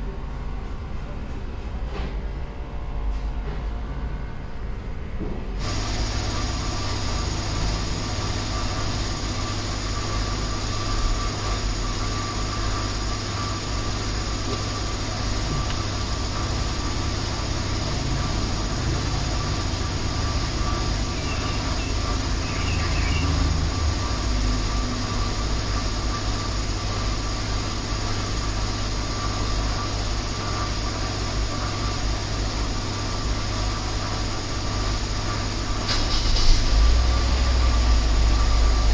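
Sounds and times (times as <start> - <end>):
car engine idling: 12.8 - 27.1.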